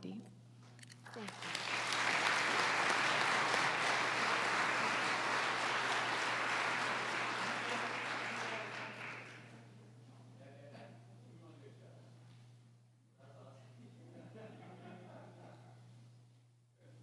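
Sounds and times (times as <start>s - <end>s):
audience applause: 1.1s - 9.5s.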